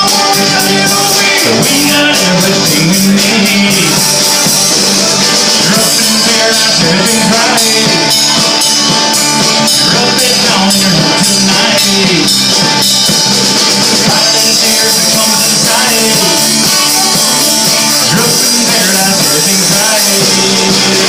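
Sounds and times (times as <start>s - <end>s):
rock band playing: 0.0s - 21.0s.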